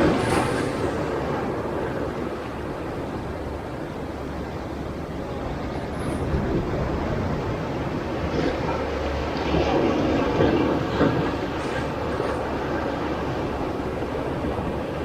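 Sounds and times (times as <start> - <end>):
sea waves surging on rocks: 0.0 - 15.0.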